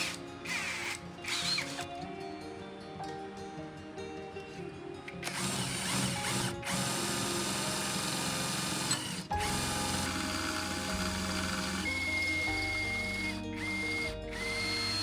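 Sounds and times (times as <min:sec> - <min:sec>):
mechanical tool noise: 0:00.0 - 0:01.9, 0:05.1 - 0:15.0
background music: 0:00.0 - 0:15.0.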